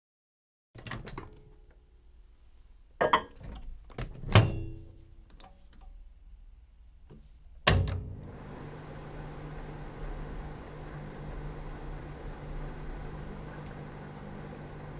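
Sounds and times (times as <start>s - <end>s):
microwave door latch clicks: 4.3s - 4.8s, 7.7s - 8.1s
microwave humming: 7.6s - 14.9s.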